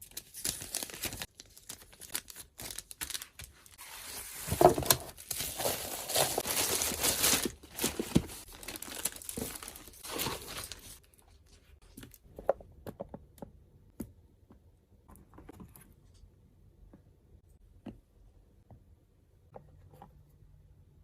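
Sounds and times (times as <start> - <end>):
packaging crinkling and rustling: 0.0 - 12.0.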